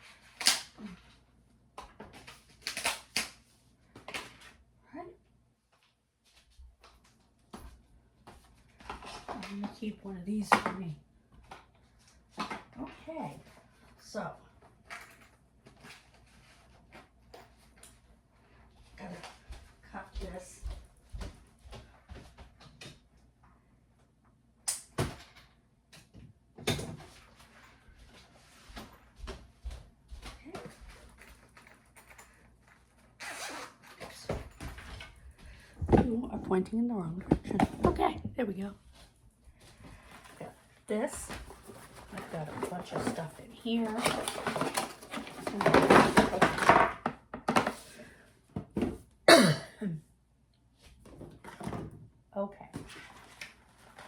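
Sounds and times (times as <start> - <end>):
packaged items rustling and clattering: 11.4 - 18.2, 39.6 - 49.1, 52.8 - 54.0.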